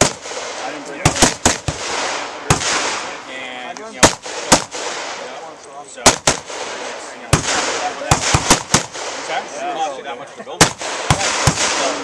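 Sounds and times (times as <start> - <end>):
rifle shots: 0.0 - 3.2, 3.9 - 5.4, 6.0 - 9.5, 10.6 - 12.0.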